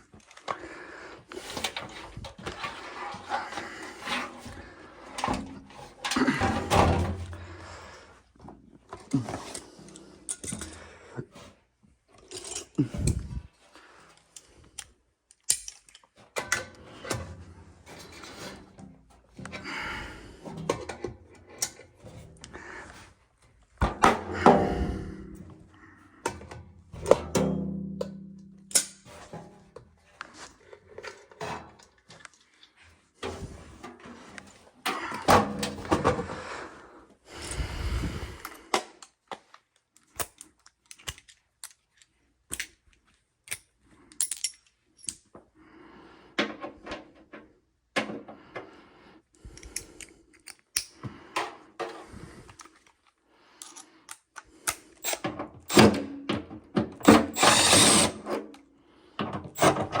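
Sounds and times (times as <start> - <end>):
hand tools clicking and knocking: 8.9 - 10.9, 53.6 - 58.6, 59.2 - 60.0
noisy stretches of tool work: 48.2 - 56.2, 56.9 - 60.0.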